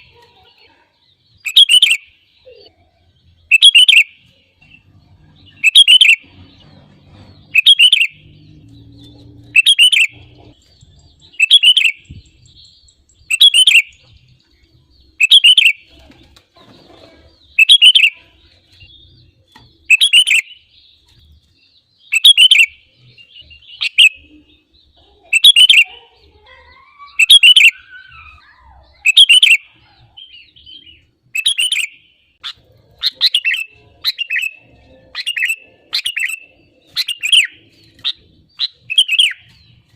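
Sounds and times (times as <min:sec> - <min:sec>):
bird singing whistled phrases: 0:01.4 - 0:02.7, 0:03.5 - 0:04.1, 0:05.6 - 0:06.2, 0:07.5 - 0:08.3, 0:09.6 - 0:10.2, 0:11.3 - 0:14.0, 0:15.2 - 0:15.8, 0:17.6 - 0:18.2, 0:19.8 - 0:20.6, 0:22.1 - 0:22.8, 0:25.3 - 0:25.9, 0:26.8 - 0:34.6, 0:35.2 - 0:39.6.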